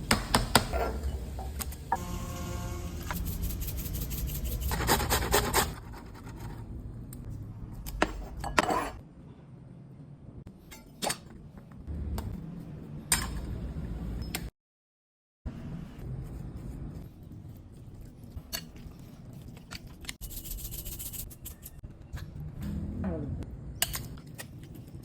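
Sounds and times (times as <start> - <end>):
utensils scraping and clinking dishes: 8.3 - 9.0.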